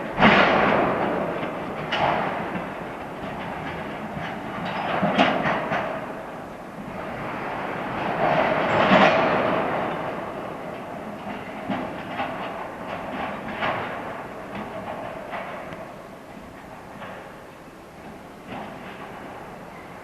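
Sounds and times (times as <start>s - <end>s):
freight train rumbling: 0.0s - 20.0s
train wheels clacking on rails: 0.0s - 20.0s.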